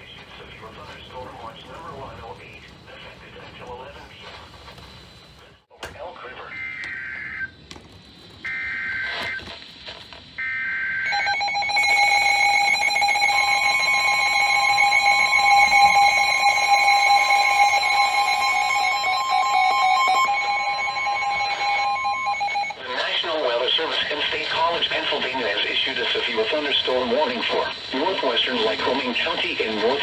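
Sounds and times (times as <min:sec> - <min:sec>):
higher alert tone: 0:11.1 - 0:22.8
steady alert tone: 0:11.1 - 0:22.8
screeching digital data bursts: 0:11.1 - 0:23.0.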